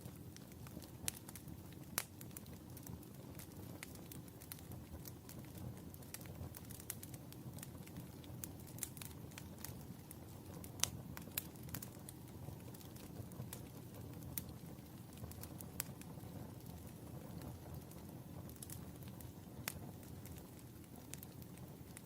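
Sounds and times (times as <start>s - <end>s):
fire crackles and pops: 0.0s - 22.0s
wood fire burning: 0.0s - 22.0s.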